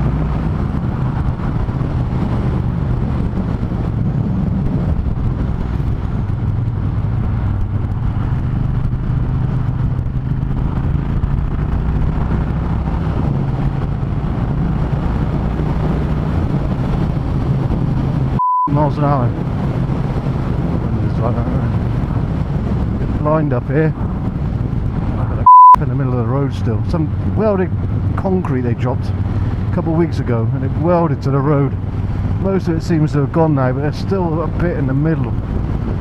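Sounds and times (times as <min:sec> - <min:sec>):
motorcycle engine running: 0:00.0 - 0:18.3
wind and road noise: 0:00.0 - 0:36.0.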